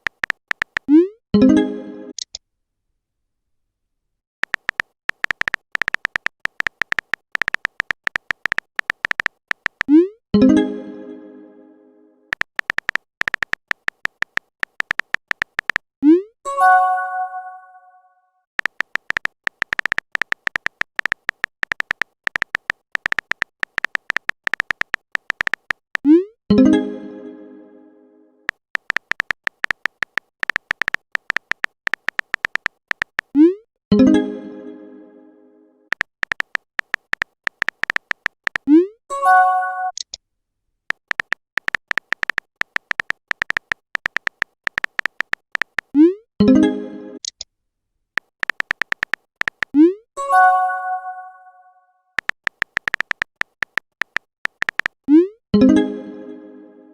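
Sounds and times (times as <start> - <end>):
keyboard tap clicks: 0.0 - 0.9, 4.4 - 9.9, 12.3 - 15.8, 18.6 - 26.1, 28.5 - 33.3, 35.9 - 38.7, 40.9 - 45.9, 48.2 - 49.8, 52.2 - 55.0
typing effect beeps: 4.4 - 10.6, 18.6 - 26.7, 28.5 - 34.2, 35.9 - 38.9, 52.2 - 55.7
chiming message alert tone: 16.5 - 18.0, 39.1 - 40.0, 50.2 - 51.8.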